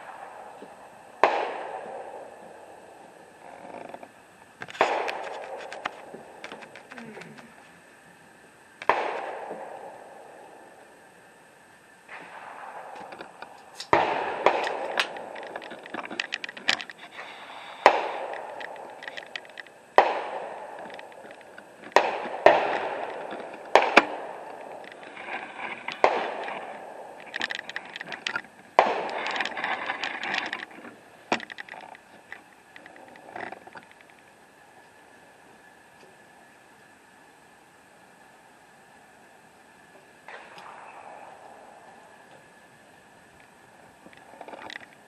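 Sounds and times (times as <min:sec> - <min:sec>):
rifle gunshots echoing: 0:01.2 - 0:02.8, 0:04.8 - 0:06.5, 0:08.8 - 0:10.5, 0:12.1 - 0:15.9, 0:17.8 - 0:18.9, 0:20.0 - 0:21.2, 0:21.8 - 0:27.3, 0:28.8 - 0:30.1.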